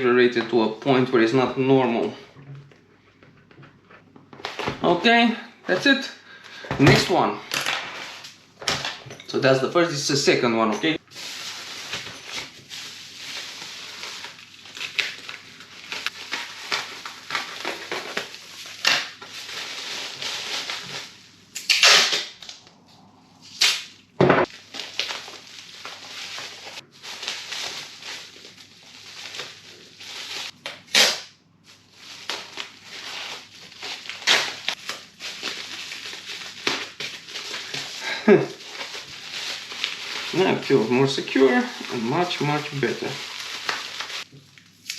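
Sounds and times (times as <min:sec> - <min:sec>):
packaging crinkling: 0:11.0 - 0:22.6, 0:24.4 - 0:31.0, 0:31.7 - 0:44.9.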